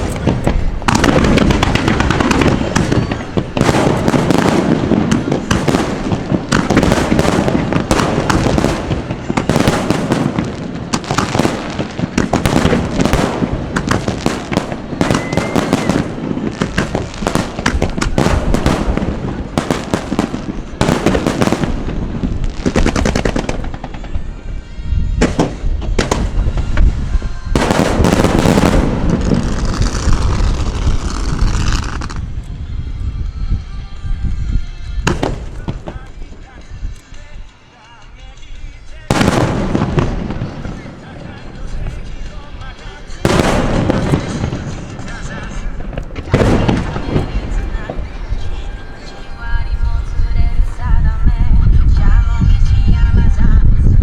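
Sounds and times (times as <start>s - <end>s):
fireworks booming: 0.0s - 32.8s, 34.2s - 37.4s, 38.7s - 54.0s.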